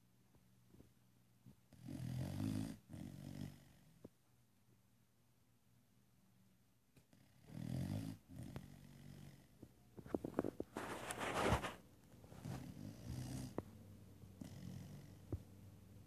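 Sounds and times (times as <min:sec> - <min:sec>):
dog snoring: 0:01.7 - 0:04.1, 0:07.1 - 0:09.6, 0:12.3 - 0:13.6, 0:14.4 - 0:15.4.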